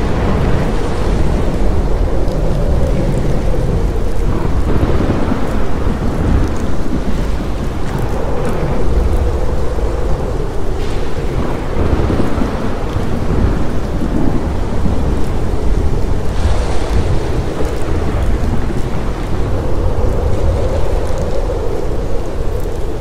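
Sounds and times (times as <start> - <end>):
heavy rain hissing: 0.0 - 23.0
rolling thunder: 0.0 - 23.0.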